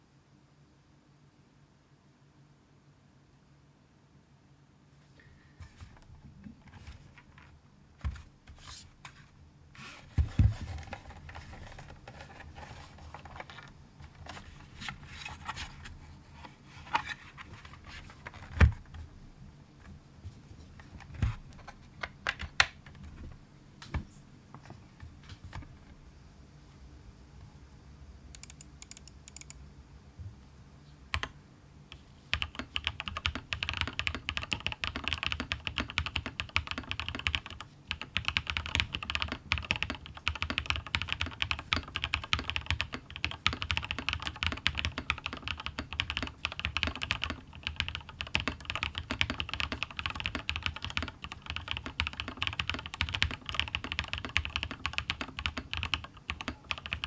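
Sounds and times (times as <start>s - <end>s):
mechanical keyboard typing: 28.3s - 29.6s, 31.1s - 31.3s, 32.3s - 57.0s.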